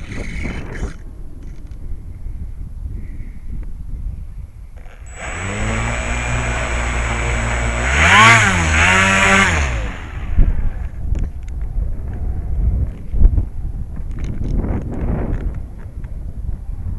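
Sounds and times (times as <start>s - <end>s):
wind buffeting microphone: 0.0s - 16.9s
electric motor whine: 4.8s - 10.5s.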